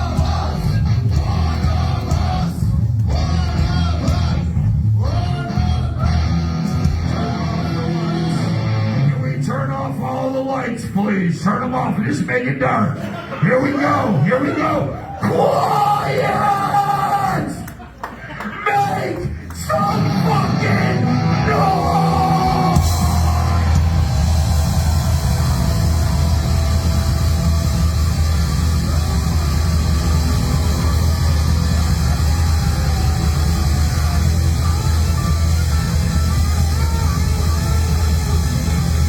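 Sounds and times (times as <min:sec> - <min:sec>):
heavy rock band playing: 0:00.0 - 0:09.2, 0:19.6 - 0:39.0
heavy bass: 0:00.0 - 0:09.5, 0:19.7 - 0:39.0.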